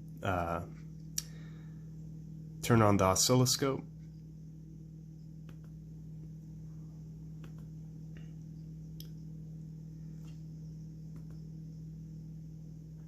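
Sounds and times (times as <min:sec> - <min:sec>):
low electrical hum: 0:00.0 - 0:13.0
faint computer mouse clicks: 0:07.4 - 0:07.7, 0:11.1 - 0:11.4.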